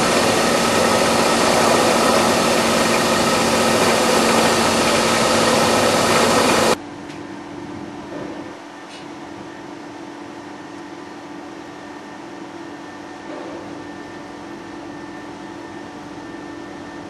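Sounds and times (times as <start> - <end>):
car engine running: 0.0 - 6.8.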